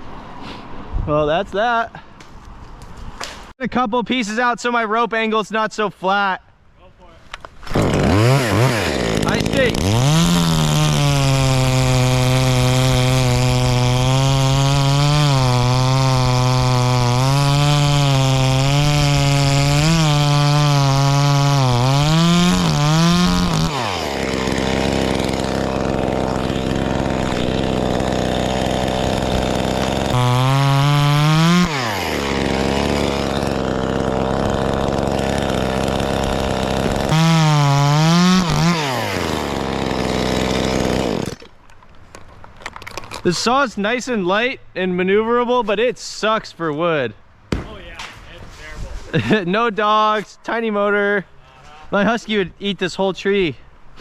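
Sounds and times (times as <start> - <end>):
chainsaw cutting wood: 7.4 - 43.3
chainsaw idling: 7.7 - 41.5.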